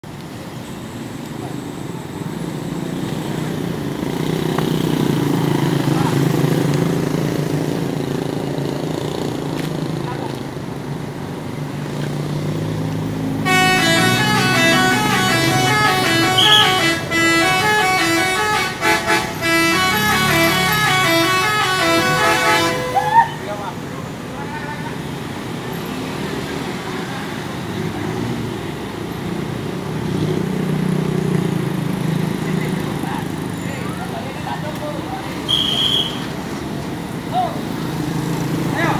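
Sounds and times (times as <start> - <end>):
bus diesel engine humming: 0.0 - 30.0
bus diesel engine running: 12.6 - 24.5.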